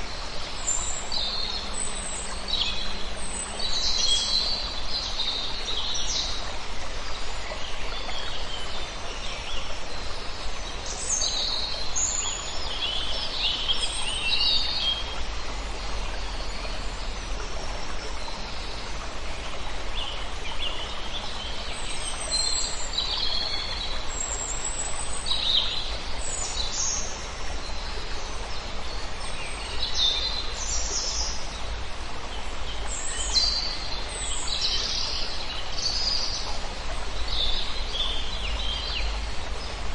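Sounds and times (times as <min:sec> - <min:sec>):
flowing water: 0:00.0 - 0:39.9
songbirds chirping: 0:00.0 - 0:39.9.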